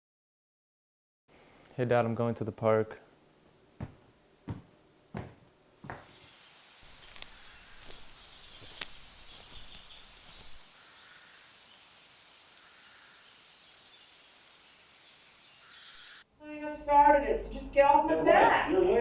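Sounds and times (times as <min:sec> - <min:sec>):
soft hiss: 0:01.3 - 0:18.0
light birdsong: 0:06.0 - 0:16.2.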